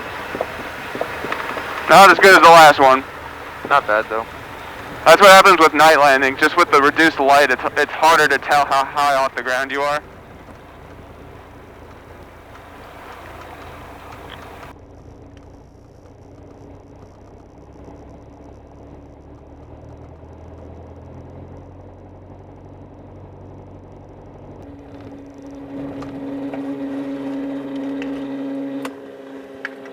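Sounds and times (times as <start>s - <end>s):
aircraft engine droning: 0.0s - 14.7s, 24.6s - 29.9s
steady hum: 0.0s - 14.7s, 24.6s - 28.9s.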